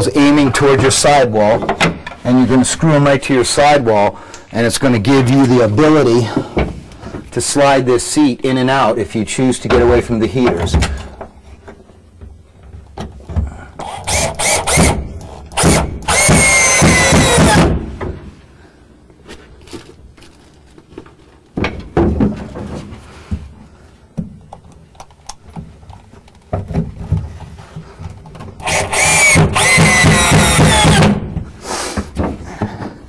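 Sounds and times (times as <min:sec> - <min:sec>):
power drill driving screws: 0:13.8 - 0:17.7, 0:28.6 - 0:31.2
wood knocking and handling: 0:19.3 - 0:24.7, 0:25.4 - 0:28.6.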